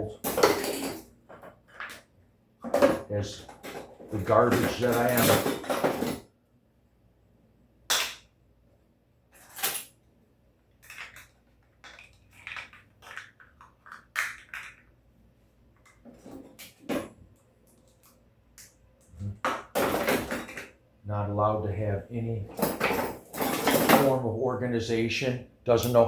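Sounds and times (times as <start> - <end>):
dishes clattering: 0.1 - 1.1, 22.5 - 24.1
utensils clinking: 0.1 - 1.1, 2.7 - 6.2, 22.5 - 24.2.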